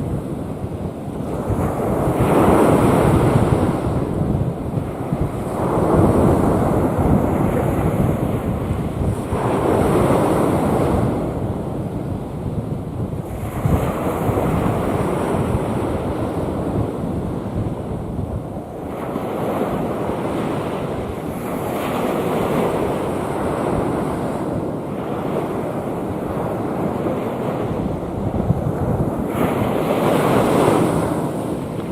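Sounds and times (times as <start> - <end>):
wind rumbling on microphone: 0.0 - 31.9
waves breaking: 18.7 - 31.9.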